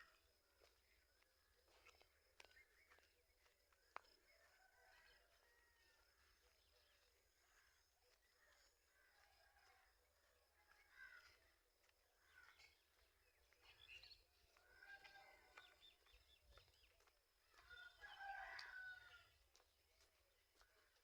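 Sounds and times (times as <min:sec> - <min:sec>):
rooster crowing: 0:17.6 - 0:19.3.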